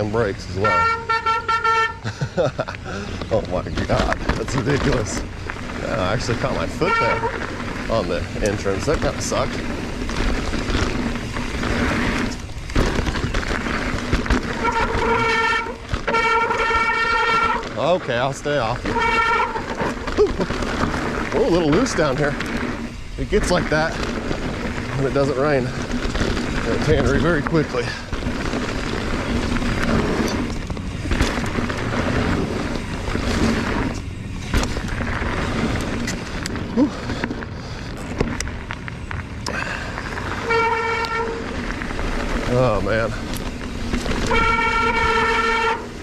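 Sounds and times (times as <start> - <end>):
bike brake squealing: 0.0 - 2.0, 3.9 - 37.8, 39.4 - 46.0
wind: 0.0 - 46.0
bike knocking over rough ground: 2.6 - 46.0
tyre rumble on dirt: 3.2 - 46.0.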